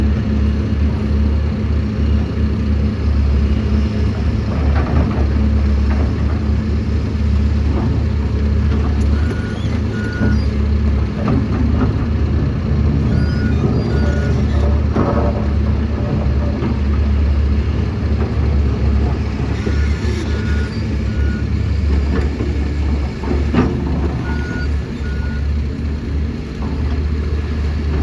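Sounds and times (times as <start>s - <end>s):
excavator diesel engine running: 0.0s - 28.0s
short electronic beeps: 8.9s - 10.6s, 13.0s - 14.7s, 19.2s - 21.5s, 24.1s - 25.5s.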